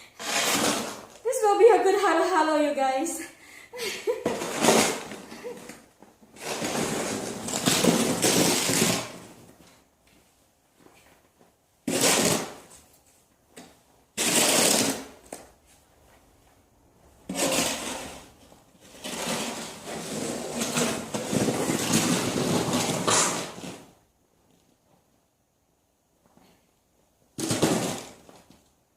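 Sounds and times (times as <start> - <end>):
snow shovel scraping snow: 0.1 - 1.1, 6.4 - 9.1, 14.2 - 15.1.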